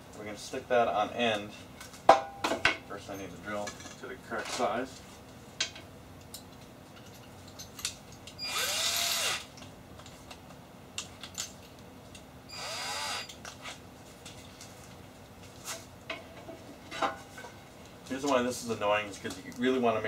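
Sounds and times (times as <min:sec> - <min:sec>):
electric drill drilling into wood: 0:08.4 - 0:09.5, 0:12.5 - 0:13.3.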